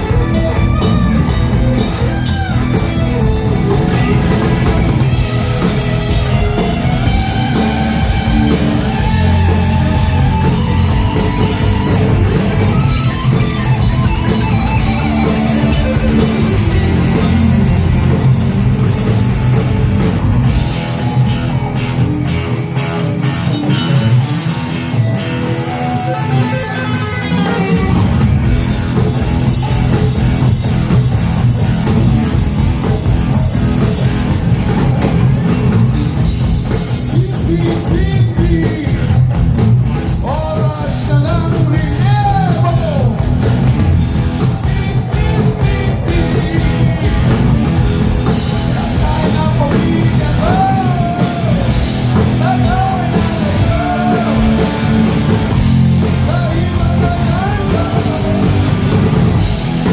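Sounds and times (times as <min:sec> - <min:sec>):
rock band playing live: 0:00.0 - 0:59.9
person singing: 0:37.1 - 0:39.2, 0:44.4 - 0:47.4, 0:48.7 - 0:55.3, 0:56.0 - 0:59.1.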